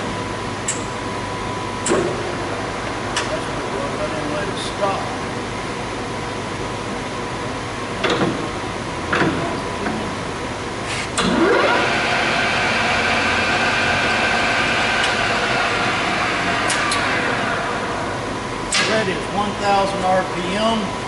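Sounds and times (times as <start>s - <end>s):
lathe spindle gear whine: 11.2s - 18.6s
lathe control clunks: 18.7s - 19.1s.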